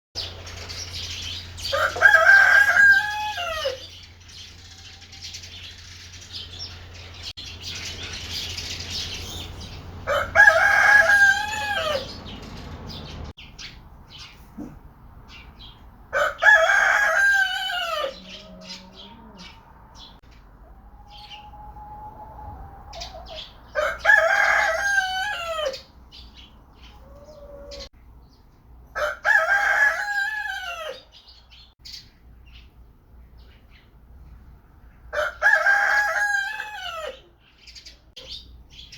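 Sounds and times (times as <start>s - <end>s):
rooster crowing: 1.6s - 3.9s, 10.1s - 12.2s, 16.1s - 20.1s, 20.8s - 25.9s, 29.0s - 31.1s, 35.1s - 37.2s.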